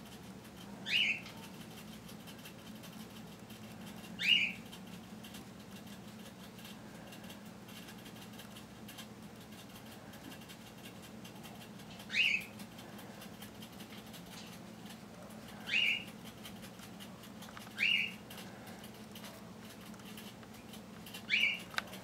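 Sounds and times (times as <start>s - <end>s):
low steady hum: 0.0s - 22.0s
small animal chirps: 0.8s - 1.4s, 4.0s - 4.7s, 11.9s - 12.6s, 15.6s - 16.2s, 17.6s - 18.2s, 20.6s - 21.8s.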